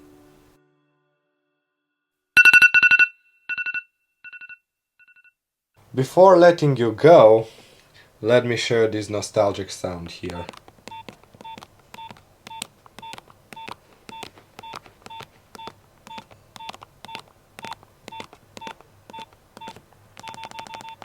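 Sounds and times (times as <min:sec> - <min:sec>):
phone keypad beeps: 0:10.4 - 0:21.0.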